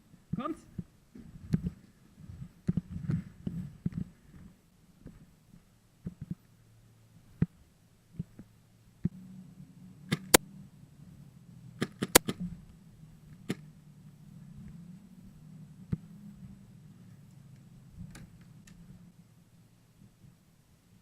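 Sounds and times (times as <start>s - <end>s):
faint low hum: 0.0s - 21.0s
sharp clicks and knocks: 11.8s - 12.5s.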